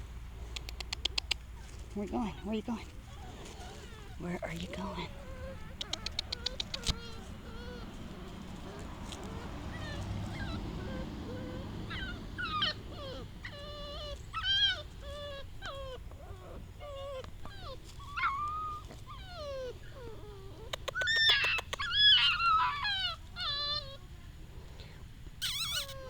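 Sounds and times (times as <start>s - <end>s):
sharp clicks: 0.5s - 1.4s, 5.8s - 7.0s, 20.7s - 21.8s
puppy whining and whimpering: 0.6s - 26.0s.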